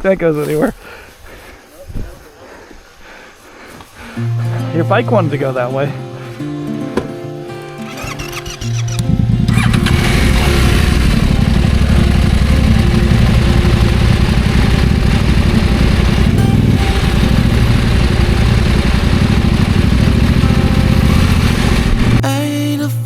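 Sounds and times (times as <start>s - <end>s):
guitar music: 4.1s - 23.0s
faint music: 4.2s - 23.0s
motorcycle engine running: 7.9s - 22.2s.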